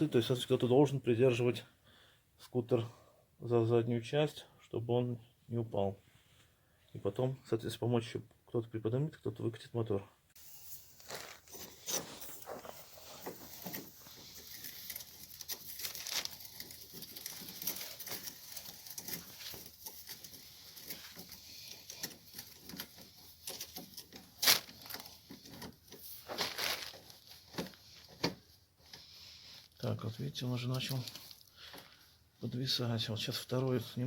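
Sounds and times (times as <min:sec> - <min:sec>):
metallic clicks and scrapes: 0:10.4 - 0:29.9.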